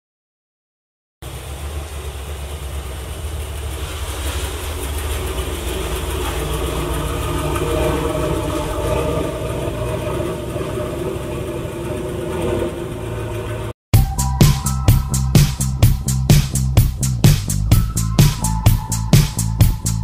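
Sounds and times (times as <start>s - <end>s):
car engine idling: 1.2s - 20.0s.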